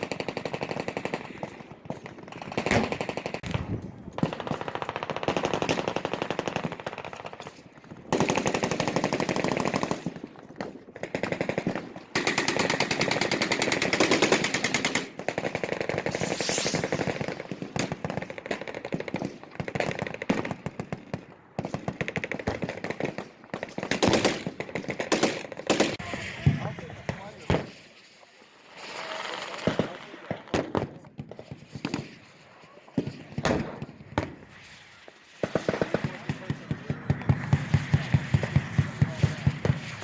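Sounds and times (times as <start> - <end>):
machine guns firing bursts: 0.0 - 3.5, 4.2 - 7.4, 8.1 - 10.2, 11.0 - 20.9, 21.6 - 26.2, 28.8 - 30.8, 35.4 - 40.0.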